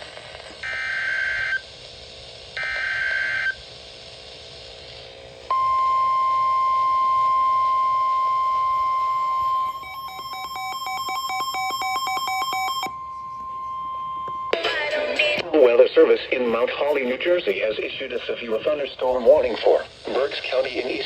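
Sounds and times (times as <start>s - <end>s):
rapid beeping: 5.5s - 21.0s
steady warning tone: 5.5s - 21.0s
warbling data bursts: 5.5s - 21.0s.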